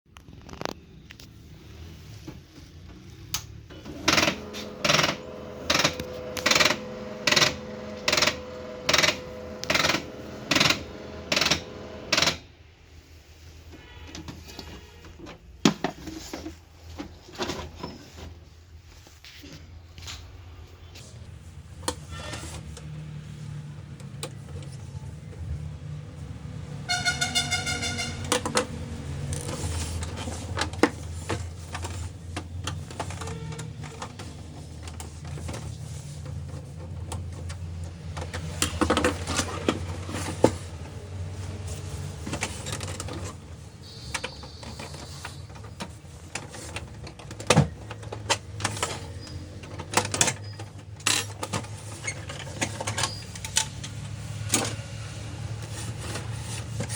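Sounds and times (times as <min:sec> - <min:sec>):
printer gears clicking and knocking: 0:03.9 - 0:12.4.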